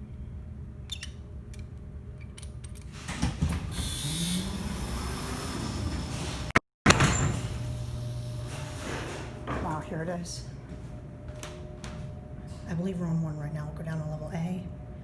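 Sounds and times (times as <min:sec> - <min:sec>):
elevator hum: 0:02.6 - 0:15.0
elevator doors opening rumble: 0:02.7 - 0:14.3
motor whine: 0:03.1 - 0:06.5.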